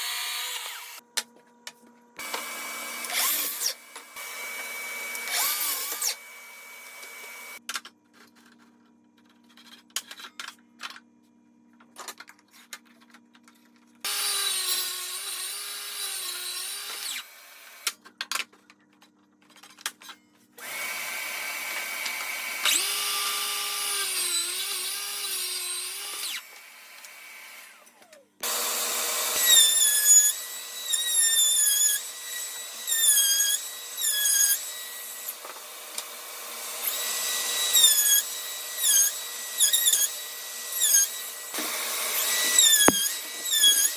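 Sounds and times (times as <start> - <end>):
electric drill drilling wood: 0.0 - 1.0, 2.2 - 7.6, 20.6 - 43.9.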